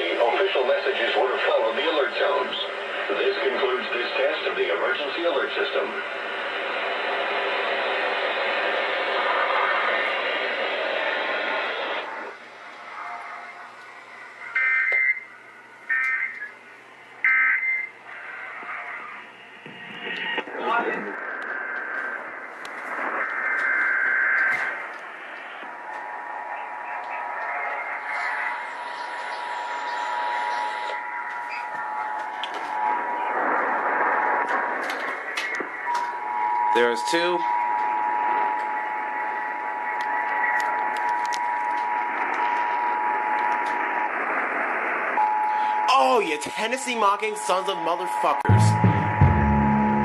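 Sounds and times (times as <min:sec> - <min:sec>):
crackles: 0:00.0 - 0:48.5
radio static hiss: 0:00.0 - 0:49.3.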